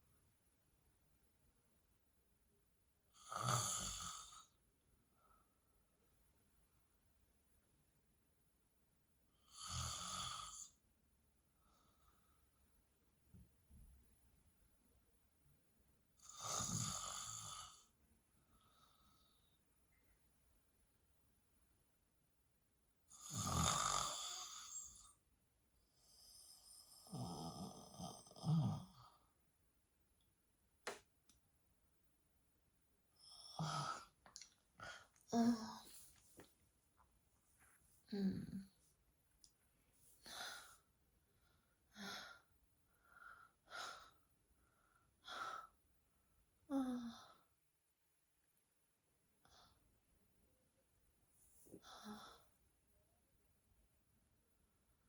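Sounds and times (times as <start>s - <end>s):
woman snoring: 3.1s - 4.6s, 9.4s - 10.8s, 16.2s - 17.9s, 23.1s - 25.2s, 26.0s - 29.2s, 33.2s - 34.2s, 34.8s - 36.1s, 38.0s - 38.8s, 46.7s - 47.5s, 51.6s - 52.5s
woman sighing: 34.8s - 36.1s.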